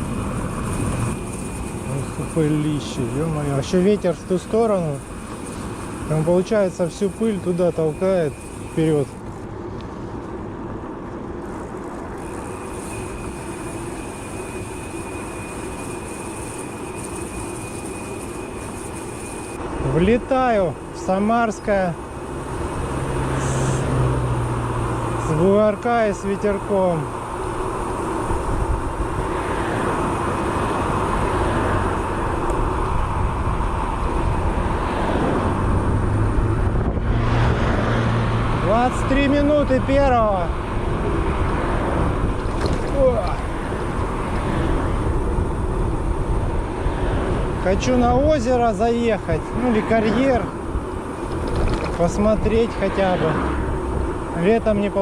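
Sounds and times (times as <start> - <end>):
faint high whine: 0.0 - 36.8
low hum: 0.0 - 47.7
road noise from bicycle: 0.0 - 55.0
wind noise: 27.2 - 55.0.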